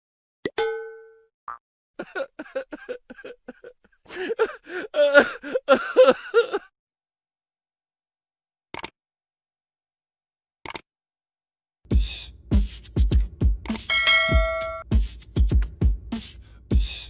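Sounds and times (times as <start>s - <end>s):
ringing chime: 13.9s - 14.8s.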